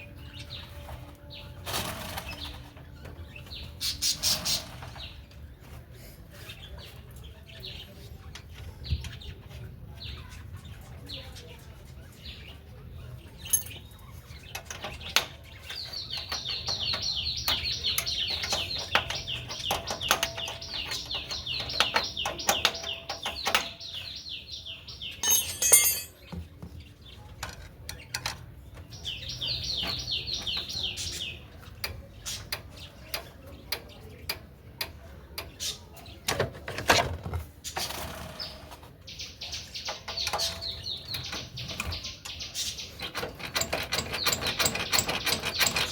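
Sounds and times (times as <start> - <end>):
sharp metal rattle: 13.4 - 13.9, 25.2 - 26.3
metal tools clinking: 13.4 - 14.0, 25.2 - 26.3.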